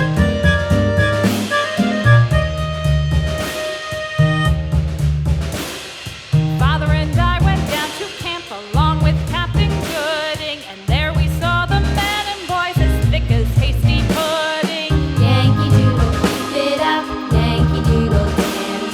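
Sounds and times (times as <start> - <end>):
pop song with singing: 6.6 - 18.9.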